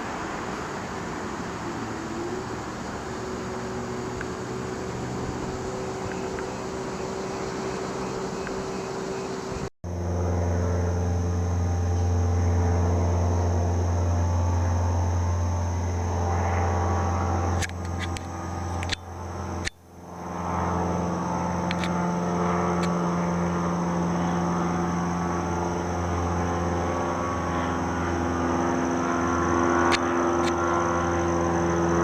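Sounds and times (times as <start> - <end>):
engine drone: 0.0 - 32.0
sharp clicks: 17.6 - 19.8, 21.7 - 22.0.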